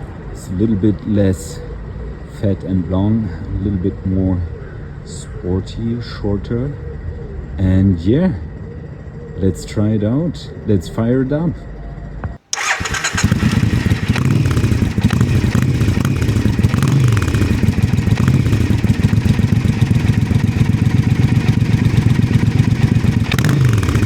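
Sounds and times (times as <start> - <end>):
motorcycle engine idling: 12.5 - 24.0.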